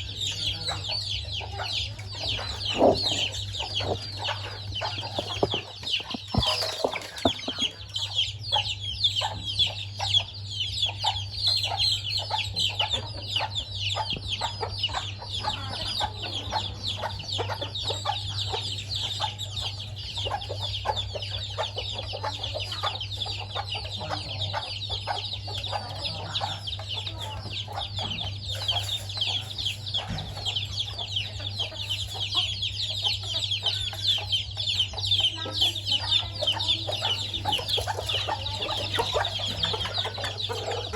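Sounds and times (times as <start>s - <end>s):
steady low hum: 0.0s - 8.0s
chicks peeping: 0.0s - 40.9s
hen clucking: 0.0s - 40.9s.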